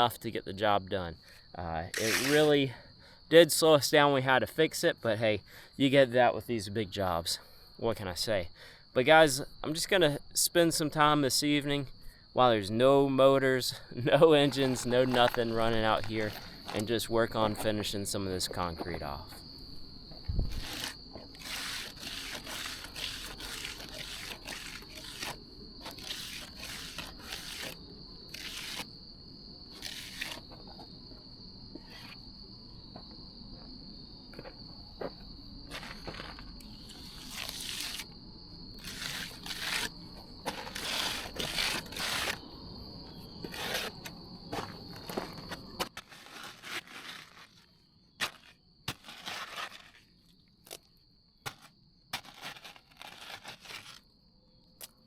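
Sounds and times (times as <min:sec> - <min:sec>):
crickets trilling: 0:00.0 - 0:55.0
trowel scraping concrete: 0:01.9 - 0:02.6, 0:14.2 - 0:17.8, 0:20.4 - 0:28.9, 0:29.8 - 0:30.5, 0:35.7 - 0:38.1, 0:38.8 - 0:42.4, 0:43.4 - 0:50.8, 0:51.4 - 0:54.0.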